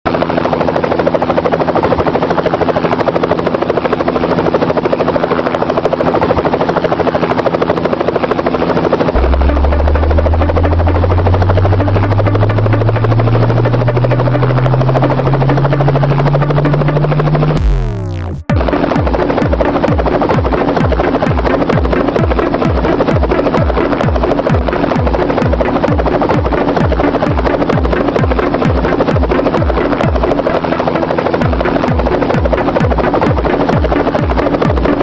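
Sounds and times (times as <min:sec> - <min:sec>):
helicopter rotor chop: 0:00.1 - 0:35.0
deep rising hum: 0:09.2 - 0:35.0.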